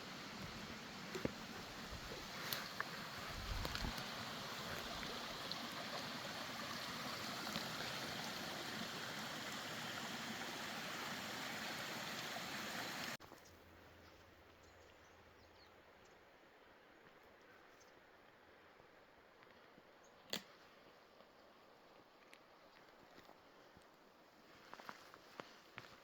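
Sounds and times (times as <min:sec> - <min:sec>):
creek rushing: 0:00.0 - 0:13.2.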